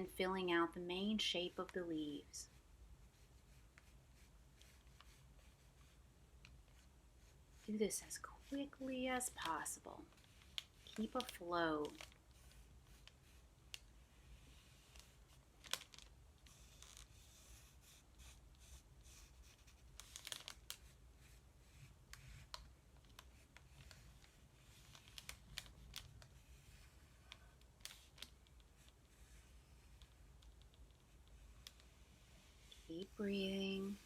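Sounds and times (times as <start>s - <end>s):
low room hum: 0.0s - 34.0s
pencil sketching on paper: 2.5s - 6.0s, 6.7s - 9.3s, 12.4s - 15.2s, 16.5s - 19.8s, 20.8s - 22.5s, 26.4s - 28.1s, 28.7s - 34.0s.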